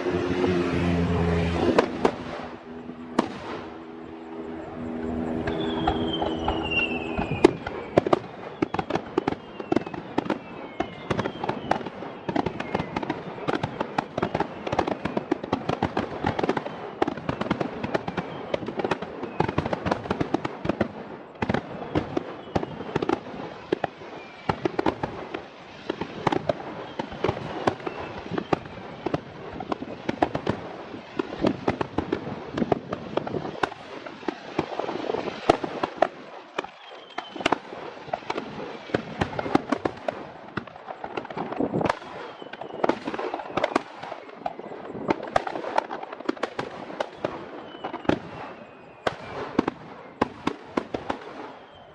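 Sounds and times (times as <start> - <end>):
fireworks whistles falling in pitch: 0.0 - 20.8, 21.4 - 51.9
fireworks bangs and crackles: 0.0 - 51.9.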